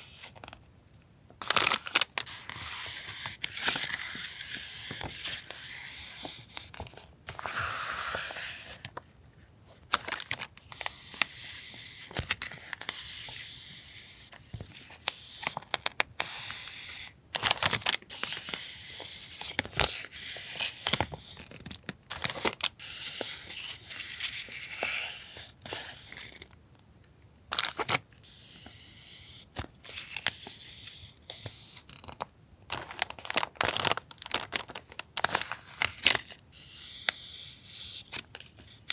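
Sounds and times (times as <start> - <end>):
paper rustling and crinkling: 1.4 - 9.1, 32.7 - 36.3.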